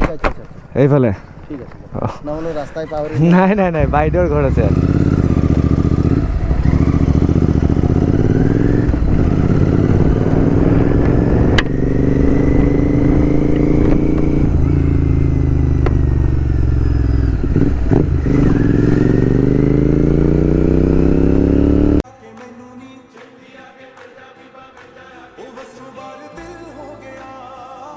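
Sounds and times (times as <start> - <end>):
motorcycle engine revving: 0.0 - 22.0.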